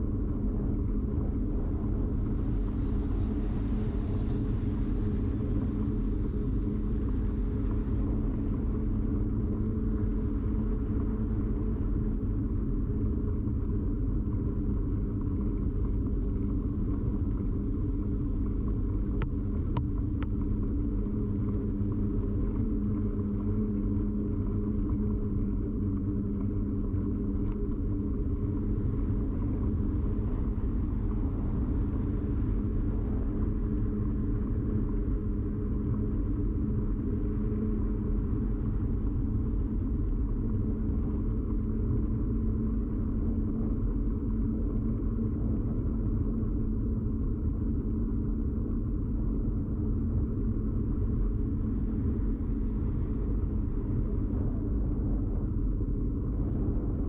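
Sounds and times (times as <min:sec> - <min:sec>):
bicycle ride rumble: 0:13.6 - 0:49.0, 0:49.8 - 0:57.0.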